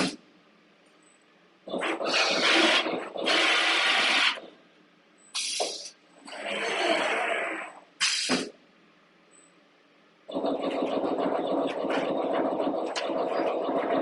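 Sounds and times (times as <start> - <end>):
machine hissing and whirring: 1.7 - 4.5, 5.3 - 8.6.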